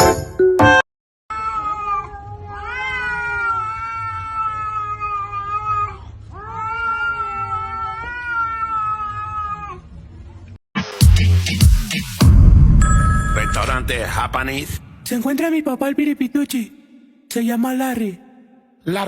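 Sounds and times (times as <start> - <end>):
cat yowling: 1.3 - 9.9.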